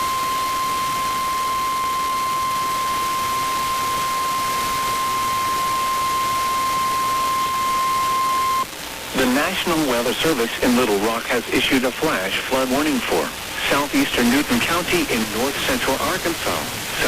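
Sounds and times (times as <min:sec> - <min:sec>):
high steady warning tone: 0:00.0 - 0:09.7
broadcast hiss: 0:00.0 - 0:17.0.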